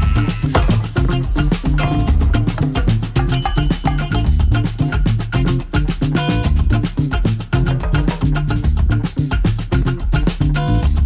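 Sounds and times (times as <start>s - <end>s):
latin background music: 0.0s - 11.0s.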